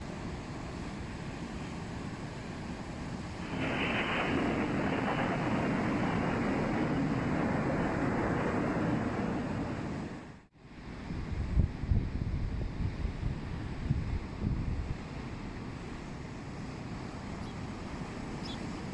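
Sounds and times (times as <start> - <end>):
waves crashing: 0.2 - 10.2, 15.0 - 18.9
wind on microphone: 3.4 - 15.7.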